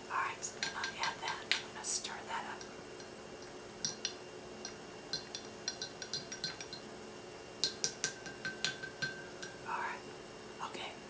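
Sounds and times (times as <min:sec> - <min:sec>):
teaspoon clinking in a cup: 0:03.8 - 0:06.9, 0:07.6 - 0:09.6.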